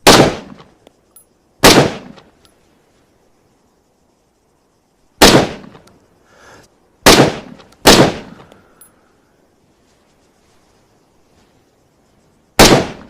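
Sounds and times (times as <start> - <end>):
rifle shots with echo: 0.0 - 0.6, 1.6 - 2.2, 5.2 - 5.8, 7.0 - 8.4, 12.6 - 13.0.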